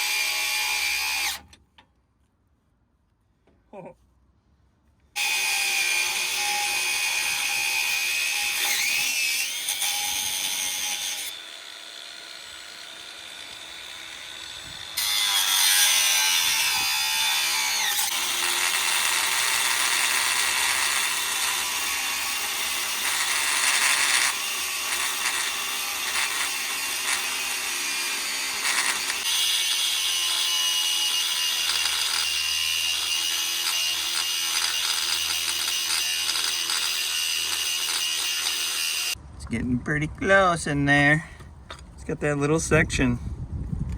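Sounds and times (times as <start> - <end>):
angle grinder cutting steel: 0.0 - 1.5, 5.2 - 39.2.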